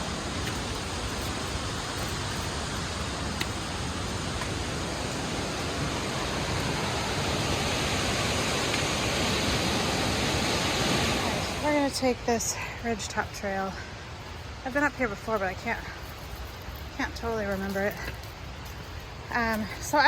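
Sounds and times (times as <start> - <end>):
waterfall rushing: 0.0 - 12.5.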